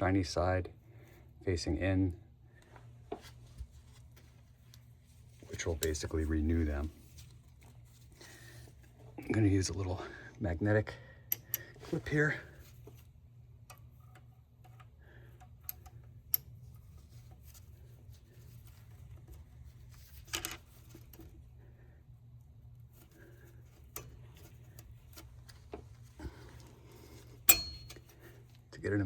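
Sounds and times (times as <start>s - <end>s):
steady low hum: 0.0s - 29.0s
light metallic clicks and taps: 27.5s - 28.1s.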